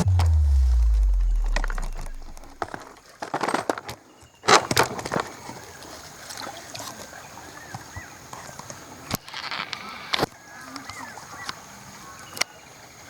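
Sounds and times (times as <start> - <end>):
faint high-pitched tone: 0.0 - 2.8.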